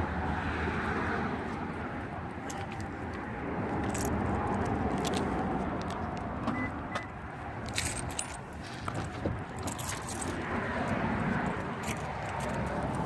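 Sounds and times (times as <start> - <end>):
keys jangling: 3.8 - 5.3, 7.6 - 13.0.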